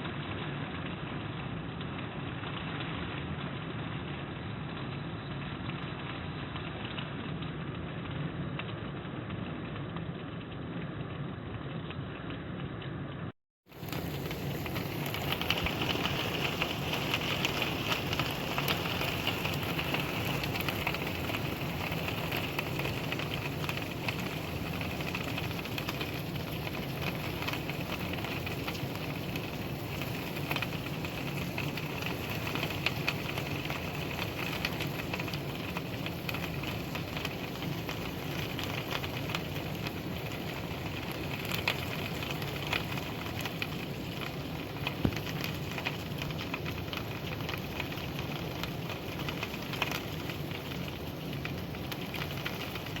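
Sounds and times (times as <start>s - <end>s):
raindrops spattering on a surface: 0.0s - 11.0s, 13.6s - 53.0s
steady rain hiss: 13.7s - 53.0s.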